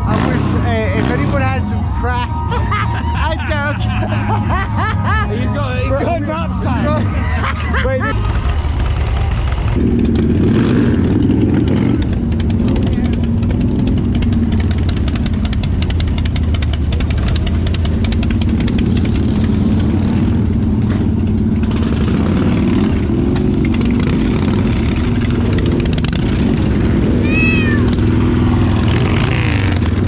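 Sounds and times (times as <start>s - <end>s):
motorcycle engine running: 3.6s - 30.0s
short high arching cry: 27.2s - 28.0s.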